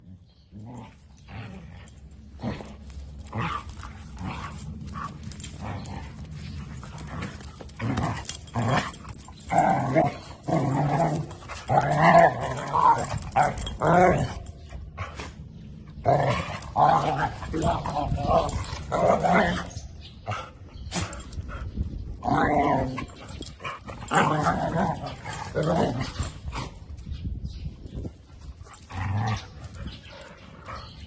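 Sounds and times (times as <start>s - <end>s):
dog growling: 0.5s - 14.6s.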